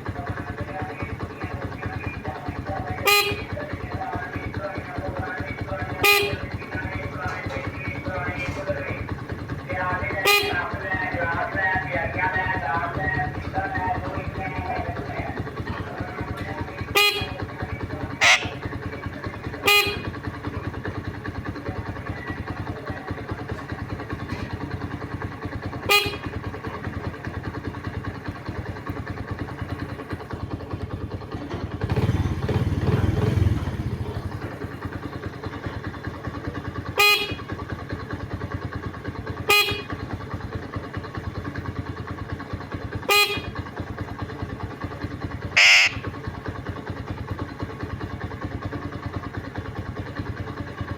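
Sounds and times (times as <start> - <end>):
parrot mimicking horn beeps: 18.2 - 18.6, 45.6 - 46.1.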